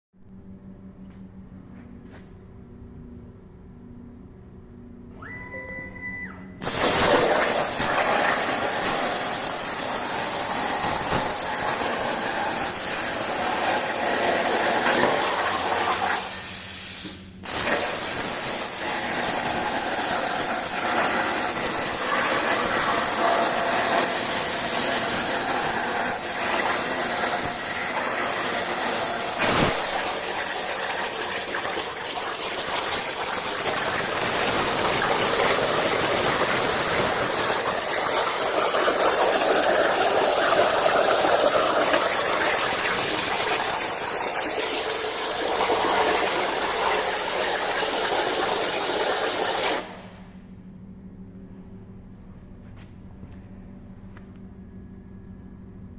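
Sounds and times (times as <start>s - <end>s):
plasma cutter arc hissing: 6.6s - 50.1s.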